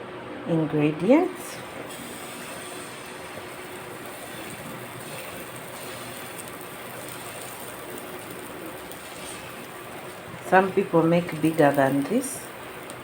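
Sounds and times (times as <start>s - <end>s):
batter sizzling in a frying pan: 1.4s - 13.0s.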